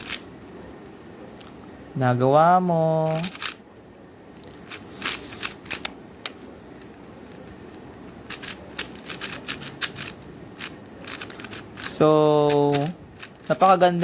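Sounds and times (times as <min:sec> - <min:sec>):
plastic puzzle cube clicking: 0:03.1 - 0:03.6, 0:08.2 - 0:13.8.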